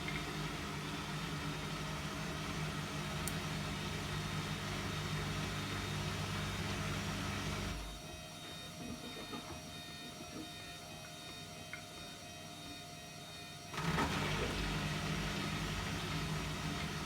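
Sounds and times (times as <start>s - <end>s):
washing machine motor hum: 0.0s - 12.7s, 13.7s - 17.0s.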